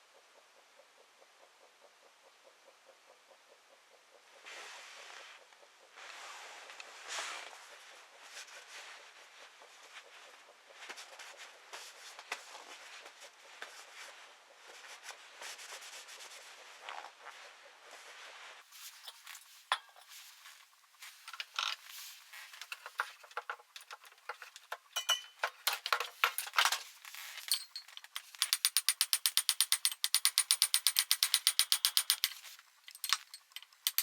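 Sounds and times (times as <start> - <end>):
rubbing and scraping: 14.8 - 28.5
light clicks and knocks: 21.2 - 34.0.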